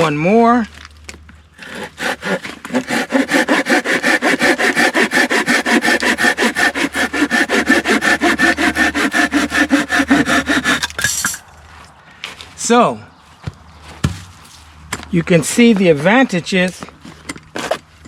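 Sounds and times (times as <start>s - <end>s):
hand saw cutting through log: 1.6s - 11.0s.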